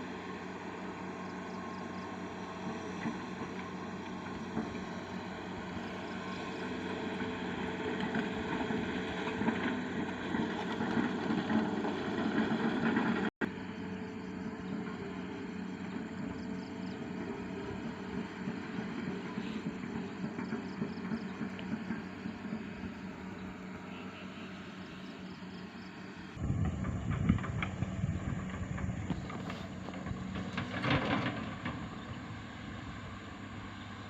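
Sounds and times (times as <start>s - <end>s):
excavator engine running: 0.0s - 34.0s
tracks crawling: 14.8s - 32.5s.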